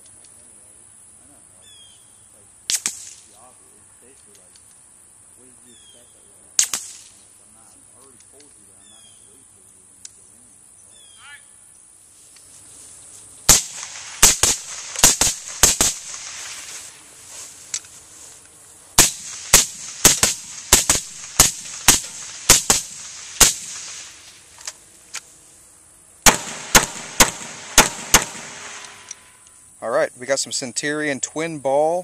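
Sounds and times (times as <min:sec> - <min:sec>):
gunshots in quick strings: 0:26.2 - 0:29.1.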